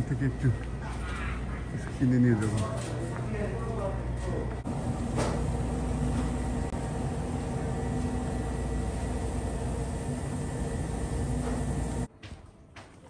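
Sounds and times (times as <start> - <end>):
low rumble and hum: 3.2 - 12.1.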